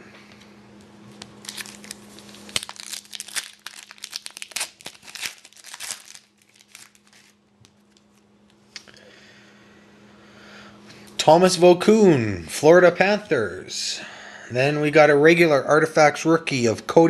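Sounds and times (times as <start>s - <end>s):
foil wrapper crinkling and tearing: 1.2s - 8.2s.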